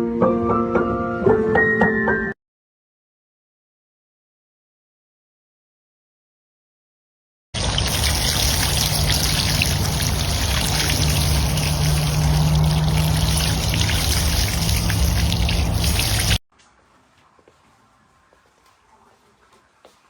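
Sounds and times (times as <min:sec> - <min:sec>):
running water: 0:07.6 - 0:16.4
low hum: 0:07.9 - 0:16.4.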